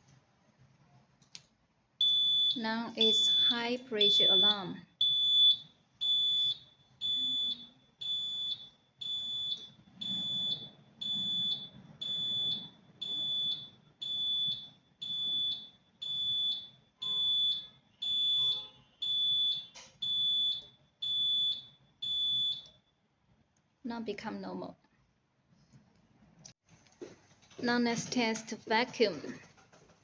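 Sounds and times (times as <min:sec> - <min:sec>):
high-pitched alarm beeps: 0:02.0 - 0:22.7.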